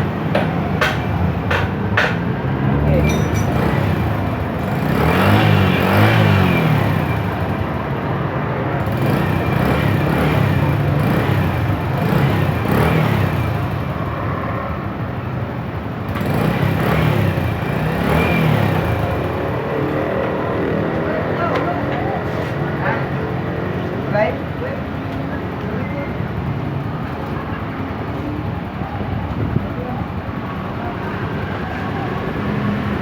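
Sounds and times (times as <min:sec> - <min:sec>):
motorcycle engine revving: 0:00.0 - 0:08.0, 0:08.8 - 0:14.0, 0:16.0 - 0:23.7.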